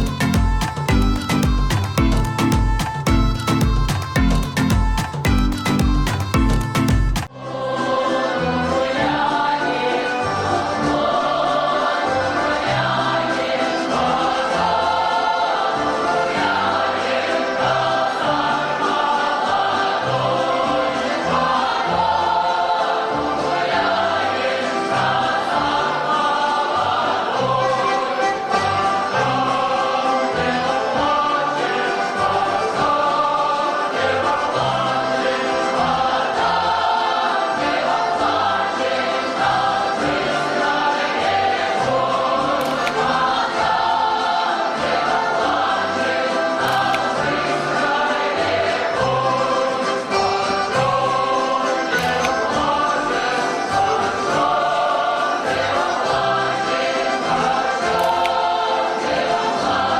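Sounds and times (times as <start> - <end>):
steady bass line: 0.0 - 7.3
choir singing: 0.0 - 59.9.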